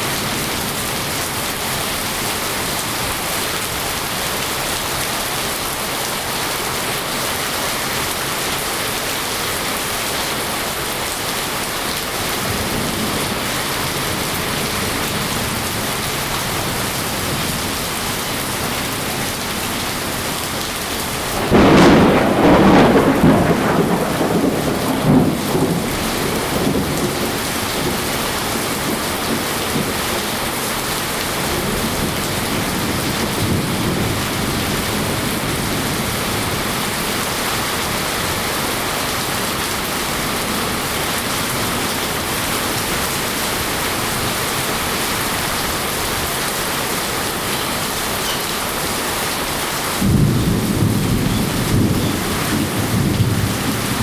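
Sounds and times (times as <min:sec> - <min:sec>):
steady rain: 0:00.0 - 0:54.0
thunder clap rumbling: 0:12.3 - 0:30.5, 0:31.4 - 0:37.4, 0:50.0 - 0:54.0.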